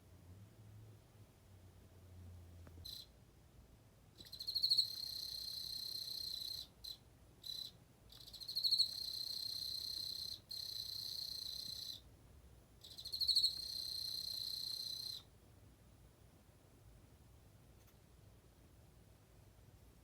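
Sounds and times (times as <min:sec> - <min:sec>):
cricket chirping and trilling: 0:02.8 - 0:03.1, 0:04.2 - 0:12.0, 0:12.8 - 0:15.2.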